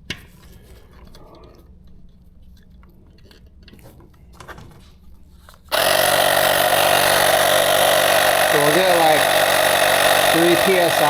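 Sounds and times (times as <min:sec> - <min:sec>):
tire inflator motor buzzing: 0:05.7 - 0:11.0.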